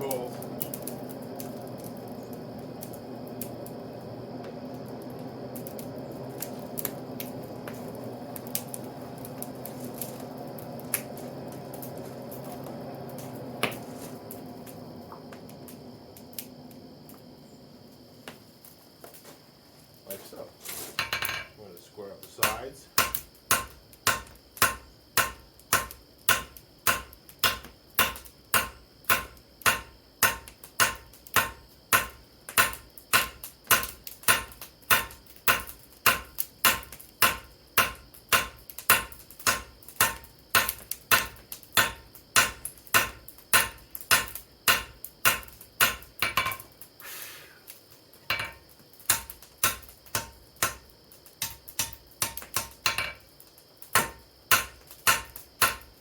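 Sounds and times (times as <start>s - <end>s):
hammer striking steel on anvil: 22.4s - 46.6s, 48.3s - 50.8s, 51.4s - 53.2s, 54.0s - 55.8s.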